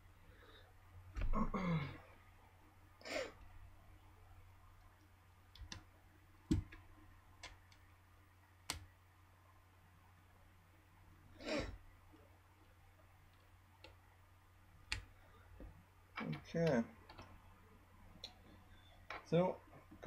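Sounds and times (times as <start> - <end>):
soft breath: 0.2 - 0.9.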